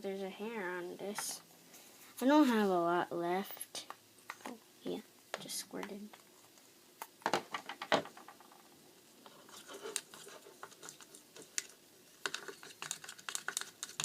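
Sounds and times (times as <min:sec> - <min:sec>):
utensil stirring in plastic container: 0:09.2 - 0:14.0.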